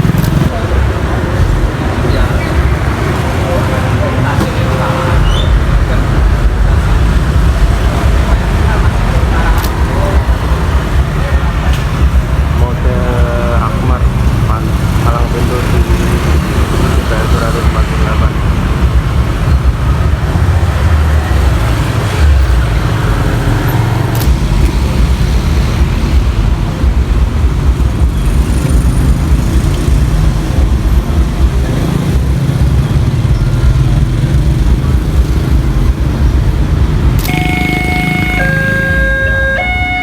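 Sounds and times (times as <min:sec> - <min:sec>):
road traffic passing: 0:00.0 - 0:40.0
level crossing warning siren: 0:37.2 - 0:40.0.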